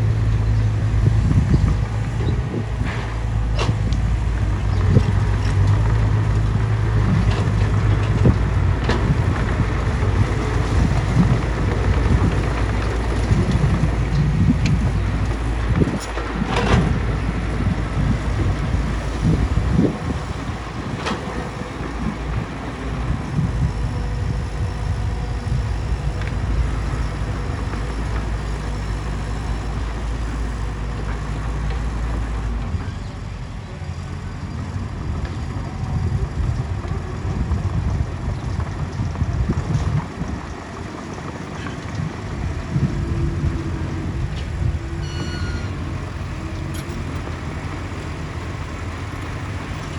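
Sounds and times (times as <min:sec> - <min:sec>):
bulldozer diesel engine under load: 0:00.0 - 0:49.9
sharp metallic clanks: 0:45.0 - 0:45.8.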